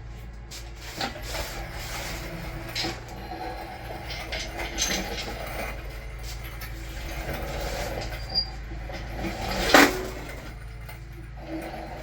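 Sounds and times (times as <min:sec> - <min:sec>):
short squeak: 0:08.0 - 0:08.6.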